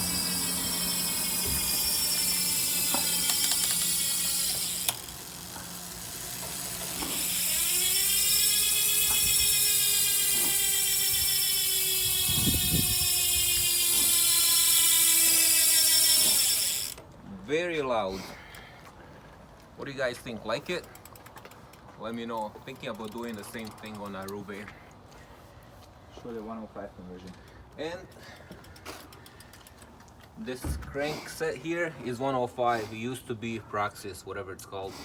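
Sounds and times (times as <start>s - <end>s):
bicycle hub freewheeling buzz: 0.0s - 17.0s, 22.8s - 24.3s.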